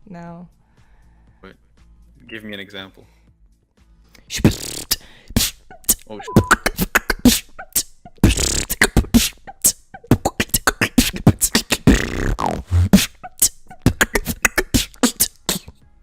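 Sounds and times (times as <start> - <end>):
person beatboxing: 4.3 - 15.8.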